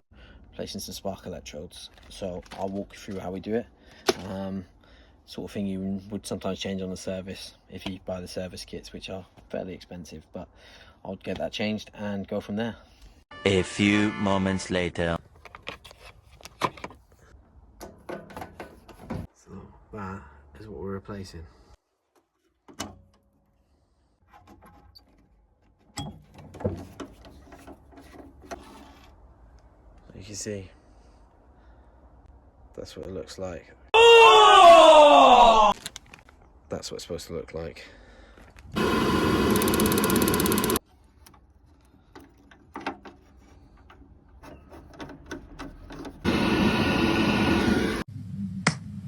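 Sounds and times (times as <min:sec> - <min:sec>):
boiler ignition clicking rapidly: 0:38.8 - 0:40.8
small parts clicking and knocking: 0:39.5 - 0:45.9.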